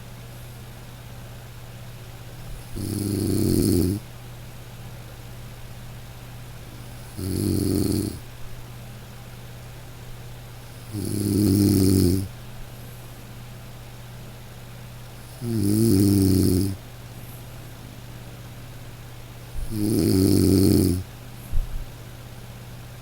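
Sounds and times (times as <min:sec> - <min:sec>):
steady low hum: 0:00.0 - 0:23.0
person snoring: 0:02.5 - 0:04.0, 0:06.9 - 0:08.2, 0:10.8 - 0:12.3, 0:15.2 - 0:16.8, 0:19.6 - 0:21.0.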